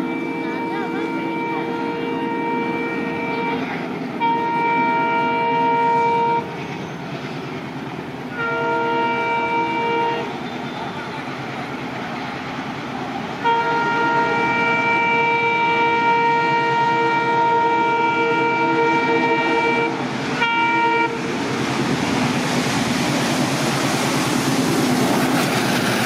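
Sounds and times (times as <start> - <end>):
diesel locomotive horn blasts: 0.0 - 6.5, 8.3 - 11.1, 13.4 - 21.4
rumble of passing train: 0.0 - 26.0.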